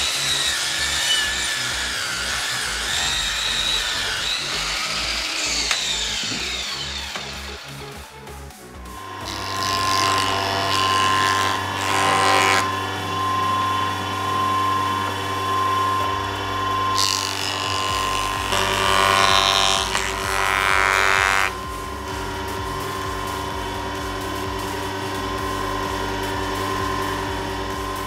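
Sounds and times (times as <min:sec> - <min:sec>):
cutting or sanding wood: 0:00.0 - 0:28.0
power tool motor running: 0:00.0 - 0:28.0.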